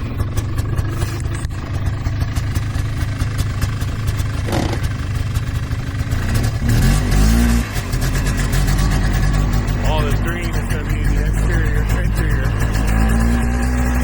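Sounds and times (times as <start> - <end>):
rattling clatter: 0.0 - 7.2
engine running: 0.0 - 14.0.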